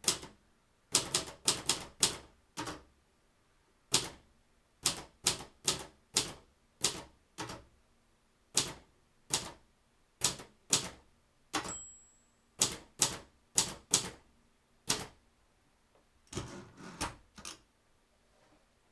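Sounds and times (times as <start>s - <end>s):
typewriter margin bell: 11.6s - 12.4s.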